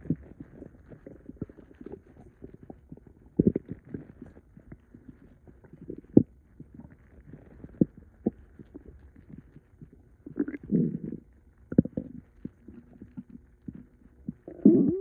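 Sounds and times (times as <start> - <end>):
stomach gurgling: 0.0 - 15.0.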